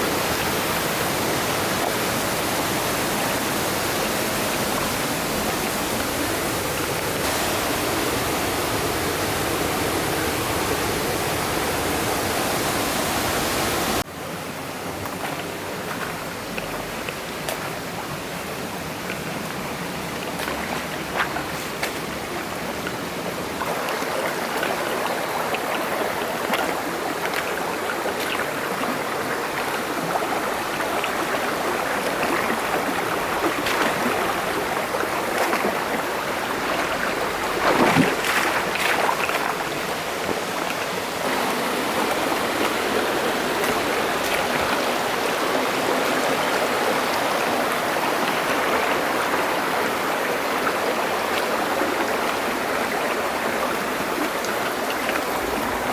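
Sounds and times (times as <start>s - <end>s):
stream rushing over rocks: 0.0s - 55.9s
loud water splash: 2.8s - 14.1s, 31.2s - 39.7s.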